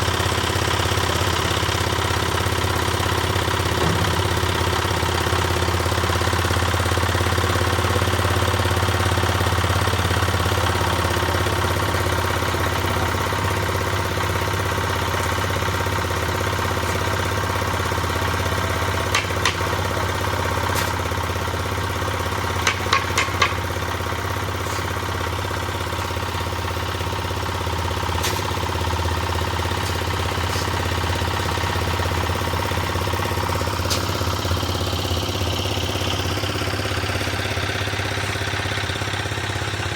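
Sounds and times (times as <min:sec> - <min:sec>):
concrete mixer engine humming: 0:00.0 - 0:39.9
sharp metallic knocks: 0:18.9 - 0:21.1, 0:22.6 - 0:23.9.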